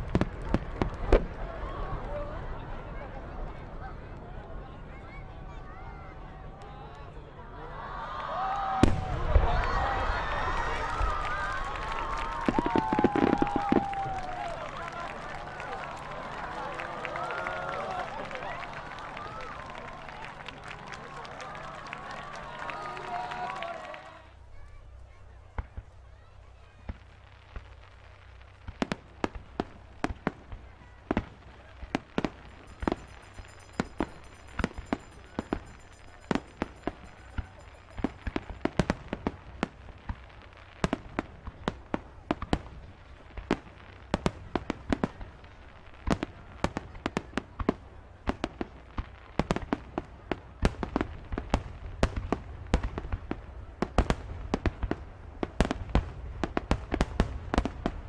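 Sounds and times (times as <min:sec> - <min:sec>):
fireworks bangs and pops: 0:00.0 - 0:01.4, 0:08.8 - 0:10.0, 0:10.8 - 0:17.4, 0:24.6 - 0:58.0.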